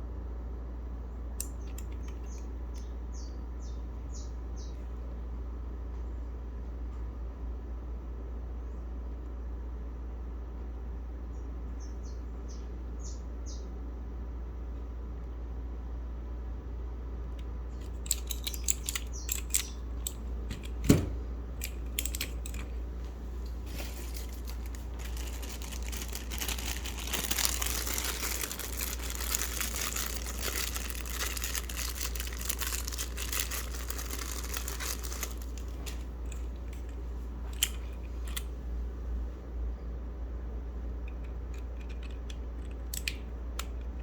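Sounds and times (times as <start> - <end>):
steady low hum: 0.0 - 44.0
plastic clicks: 17.3 - 22.8, 23.4 - 38.5, 41.1 - 44.0
crinkling rustle: 21.6 - 38.6.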